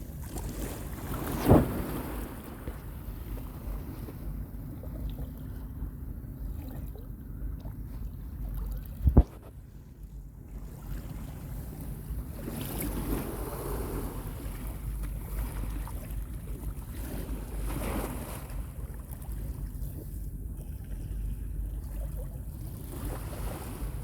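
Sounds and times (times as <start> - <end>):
small sea waves washing in: 0.0 - 4.7, 10.6 - 19.9, 21.7 - 24.0
wind rumbling on microphone: 0.0 - 9.7.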